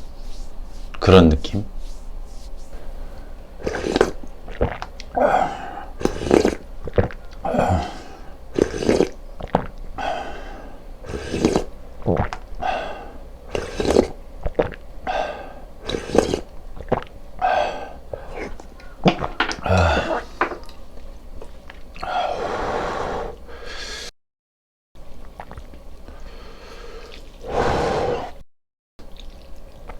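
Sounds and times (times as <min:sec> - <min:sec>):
person chewing and slurping: 0:01.8 - 0:22.1, 0:25.2 - 0:28.3.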